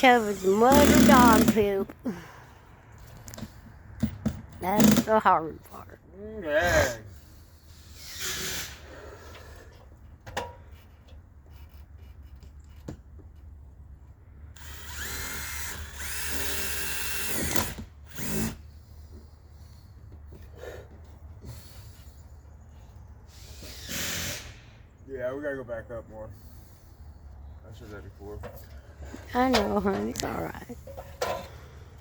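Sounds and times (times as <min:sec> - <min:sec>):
power drill driving screws into metal: 0:00.0 - 0:01.8, 0:04.0 - 0:05.2, 0:07.9 - 0:08.8, 0:14.6 - 0:18.7, 0:23.3 - 0:24.8.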